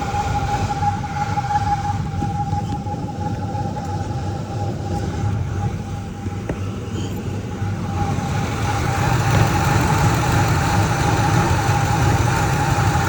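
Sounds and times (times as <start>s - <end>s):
car engine idling: 7.9s - 13.0s.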